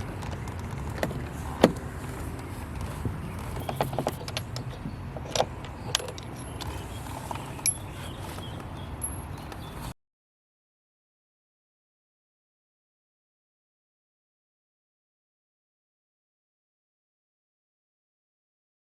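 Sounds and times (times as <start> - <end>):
door panel parts clicking: 0.0 - 8.7.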